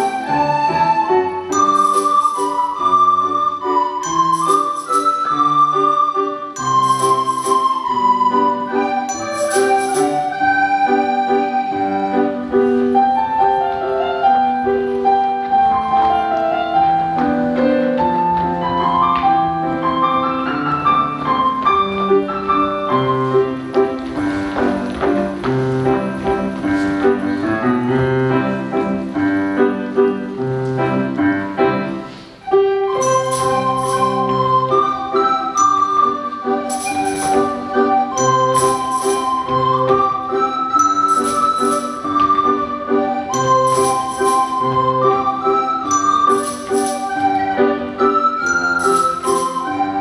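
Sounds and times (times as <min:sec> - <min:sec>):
recorder ensemble playing: 0:32.1 - 0:50.0.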